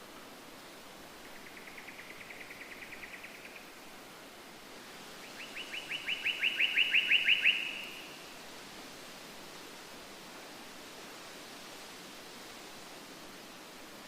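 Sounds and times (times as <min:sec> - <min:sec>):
songbird trilling: 0:05.4 - 0:08.1.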